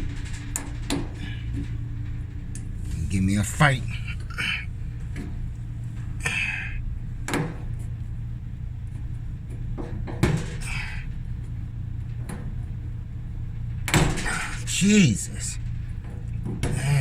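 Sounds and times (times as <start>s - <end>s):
steady low hum: 0.0s - 17.0s
knocks and scrapes on roller: 8.9s - 17.0s.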